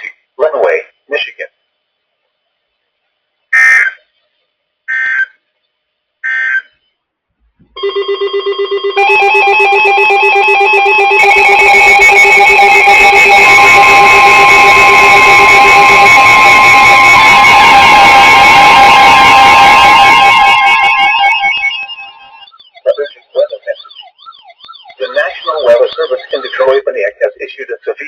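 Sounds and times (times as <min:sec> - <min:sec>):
electronic alarm tones: 0:07.8 - 0:27.4
steady alarm tone: 0:07.8 - 0:27.9
fast-pulsing beep: 0:07.9 - 0:27.4
digital data bursts: 0:09.0 - 0:28.0.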